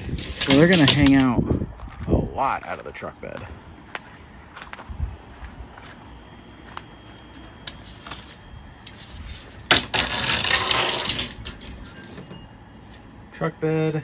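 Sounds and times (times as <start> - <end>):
rattling tape measure blade: 0.0 - 1.3, 7.7 - 12.0.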